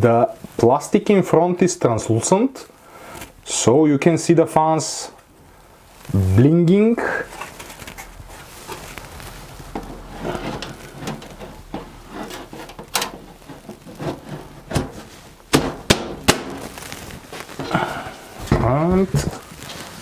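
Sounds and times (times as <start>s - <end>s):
computer case handling knocks: 14.2s - 16.7s.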